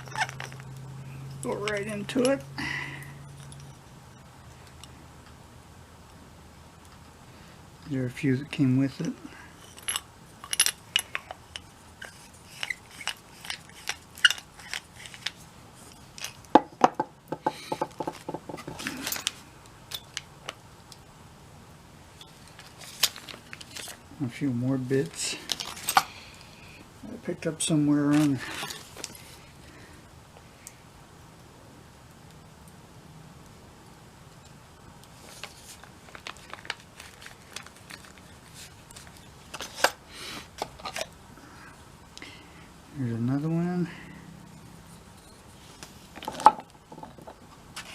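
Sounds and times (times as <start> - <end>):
metal driver bits clinking: 9.0 - 16.4
hand tools clicking and tapping: 16.2 - 19.3.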